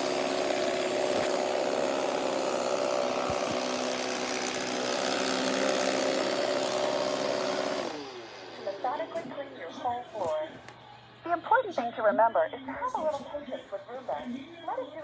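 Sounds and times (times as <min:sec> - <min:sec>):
robot vacuum whirring: 0:00.0 - 0:09.1.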